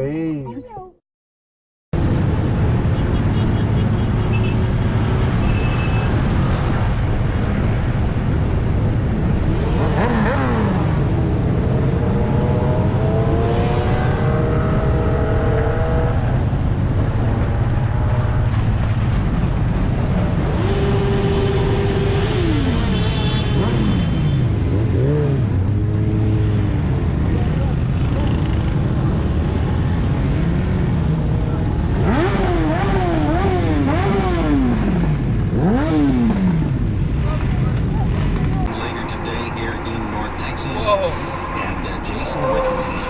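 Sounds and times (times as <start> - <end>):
car road and engine noise: 2.0 - 43.0
vehicle accelerating: 9.2 - 24.0, 24.6 - 43.0.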